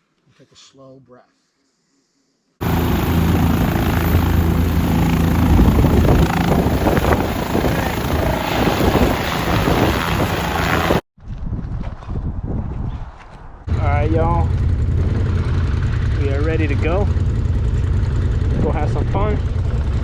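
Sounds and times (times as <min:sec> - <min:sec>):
helicopter rotor and engine: 0:02.6 - 0:11.0, 0:13.7 - 0:20.0.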